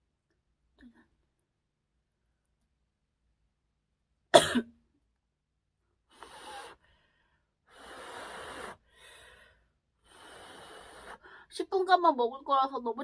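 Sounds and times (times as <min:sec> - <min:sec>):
person coughing: 0:04.4 - 0:04.8.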